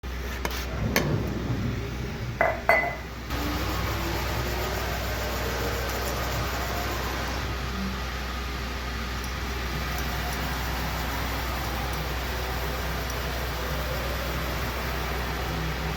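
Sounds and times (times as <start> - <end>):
steady noise with low hum: 0.0 - 15.9
glass clinks: 2.4 - 3.0.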